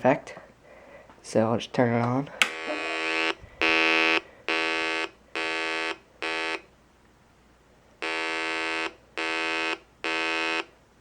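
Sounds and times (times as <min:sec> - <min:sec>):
buzzy square-wave beeps: 0:02.6 - 0:06.6.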